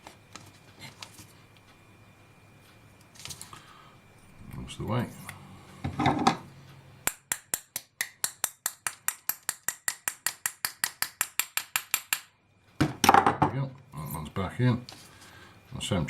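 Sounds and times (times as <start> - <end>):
small hammer tapping on metal: 7.1 - 12.3.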